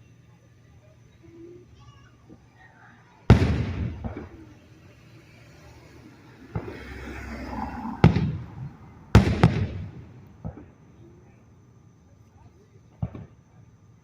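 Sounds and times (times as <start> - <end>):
fireworks bangs: 2.2 - 11.4, 12.8 - 13.6.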